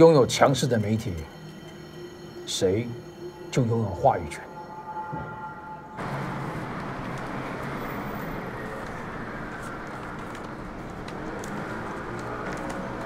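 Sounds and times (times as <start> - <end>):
passing vehicles: 4.8 - 13.0.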